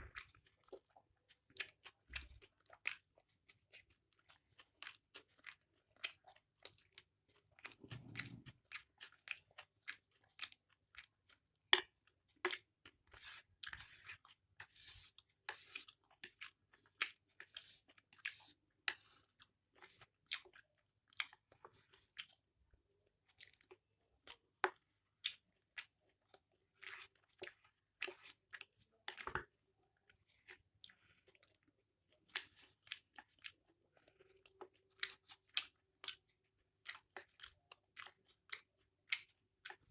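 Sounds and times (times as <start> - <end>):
wet chewing mouth clicks: 0.0 - 12.7, 32.3 - 39.9.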